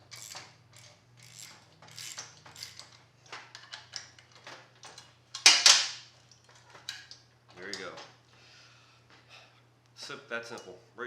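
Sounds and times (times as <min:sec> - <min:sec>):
wrench metallic clicks and scrapes: 0:00.0 - 0:05.8.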